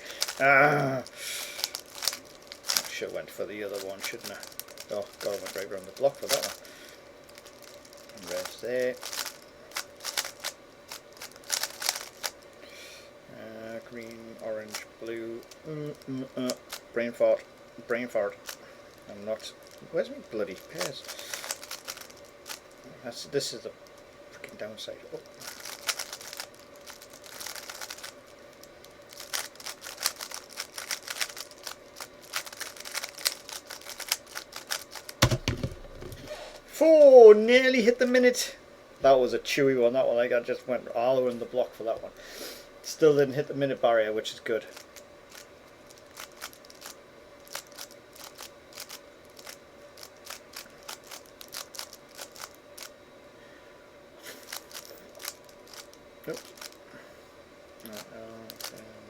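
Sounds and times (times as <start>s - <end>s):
puzzle cube plastic clicks: 0.0s - 0.5s, 1.6s - 3.0s, 3.7s - 6.7s, 7.3s - 12.4s, 20.5s - 22.6s, 25.2s - 36.3s
faint steady hum: 0.0s - 59.0s
puzzle cube clicking: 29.3s - 36.3s
heavier thump: 35.2s - 36.6s.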